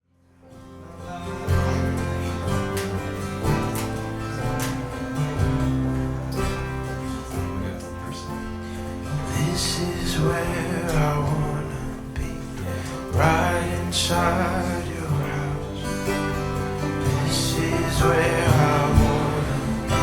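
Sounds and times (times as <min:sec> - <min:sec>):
acoustic guitar strumming chords: 0:00.2 - 0:20.0.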